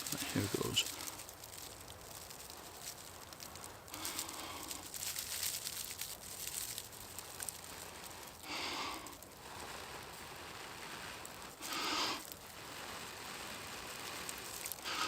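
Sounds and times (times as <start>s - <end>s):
dry grass crackling and rustling: 0.0s - 15.0s
person blowing breath: 8.4s - 9.2s, 11.6s - 12.3s.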